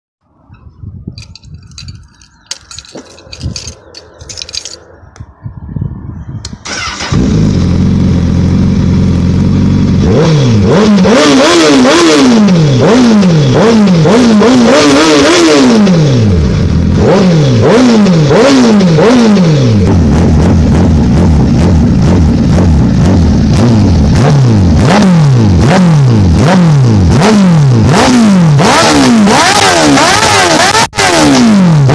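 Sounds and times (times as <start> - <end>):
motorcycle engine revving: 6.4 - 31.9.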